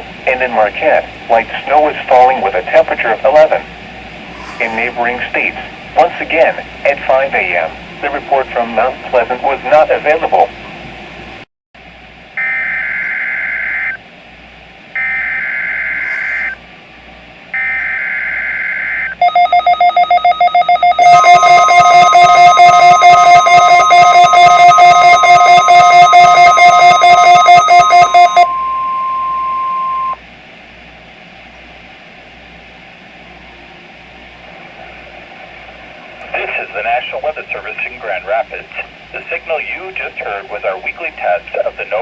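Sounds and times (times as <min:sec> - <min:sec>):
radio hiss: 0:00.3 - 0:10.6, 0:15.3 - 0:16.6, 0:34.8 - 0:42.0
steady warning alarm tone: 0:12.4 - 0:14.0, 0:15.0 - 0:16.6, 0:17.5 - 0:30.2
receiver alarm beeping rapidly: 0:15.0 - 0:16.6, 0:17.6 - 0:30.2.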